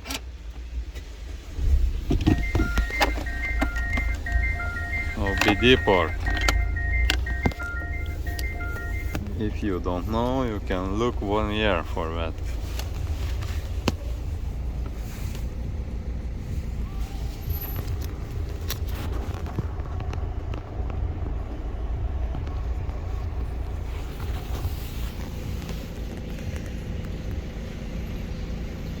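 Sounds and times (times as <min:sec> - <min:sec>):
steady low rumble: 0:00.8 - 0:18.4.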